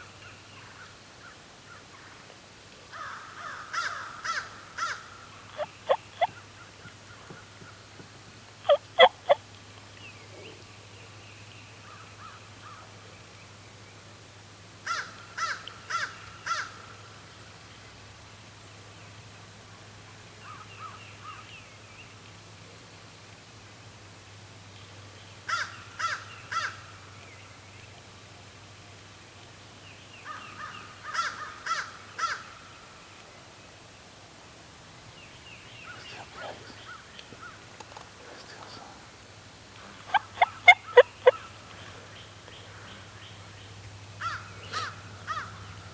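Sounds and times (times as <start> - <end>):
crow cawing: 2.9 - 6.3, 8.7 - 9.4, 30.3 - 32.5, 40.0 - 41.5, 44.2 - 45.7.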